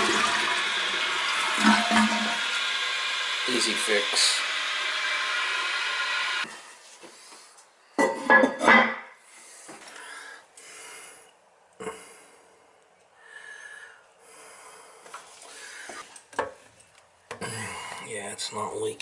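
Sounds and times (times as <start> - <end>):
toilet flushing: 0.0 - 6.5.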